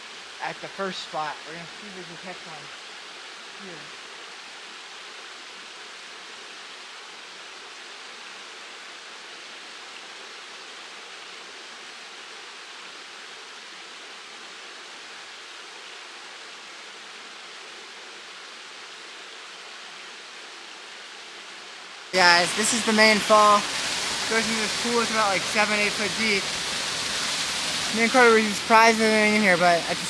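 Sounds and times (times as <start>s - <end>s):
waterfall pouring into pool: 22.2s - 30.0s.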